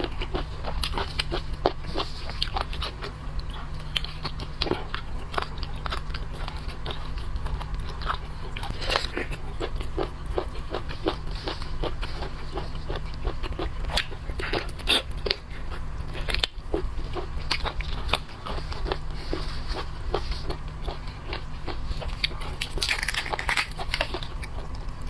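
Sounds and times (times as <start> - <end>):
wet chewing clicks: 0.0 - 25.0
crunching bites: 19.7 - 25.0.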